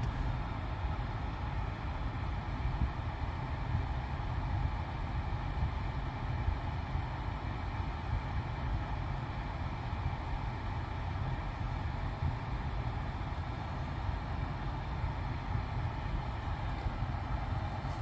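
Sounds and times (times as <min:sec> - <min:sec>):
car engine rumble: 0:00.0 - 0:00.6, 0:15.9 - 0:18.0.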